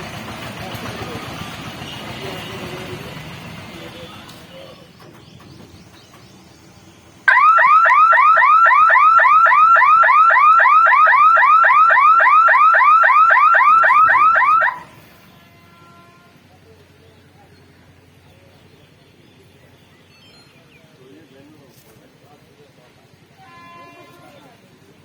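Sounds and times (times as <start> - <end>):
level crossing warning siren: 7.3 - 15.0.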